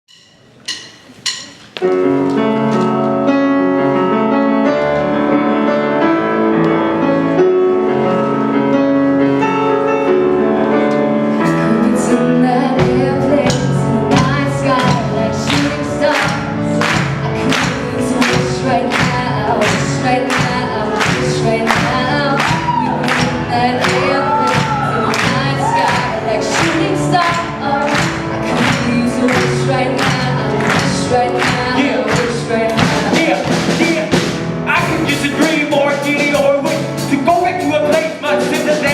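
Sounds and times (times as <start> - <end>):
drums steady beat: 0.1 - 1.8, 12.8 - 38.9
live pop band playing: 0.1 - 38.9
people singing: 11.5 - 38.9.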